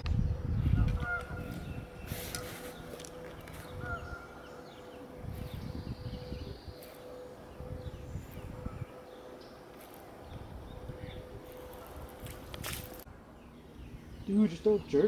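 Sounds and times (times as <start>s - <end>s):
low rumbles: 0.0s - 14.4s
bird chirps: 0.0s - 15.0s.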